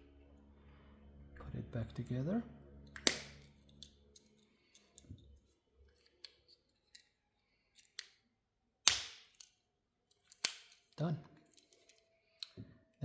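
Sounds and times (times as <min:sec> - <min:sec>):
plastic part snapping: 0:02.9 - 0:03.9, 0:08.9 - 0:09.6, 0:10.3 - 0:11.0.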